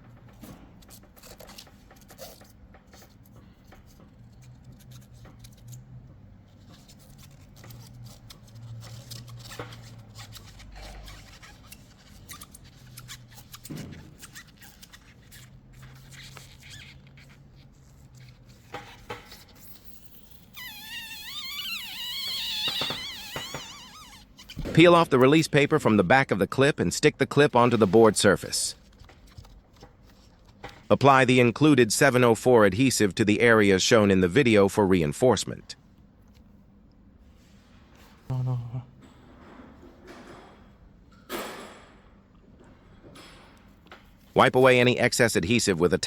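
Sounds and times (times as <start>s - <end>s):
person speaking: 24.6s - 28.8s, 30.9s - 35.8s, 38.3s - 39.0s, 44.4s - 46.0s.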